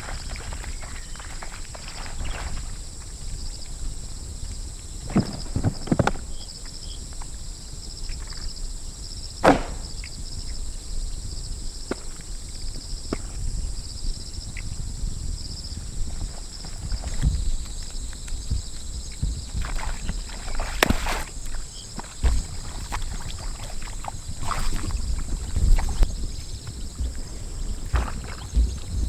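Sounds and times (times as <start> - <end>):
sharp knocks: 9.4 - 10.1.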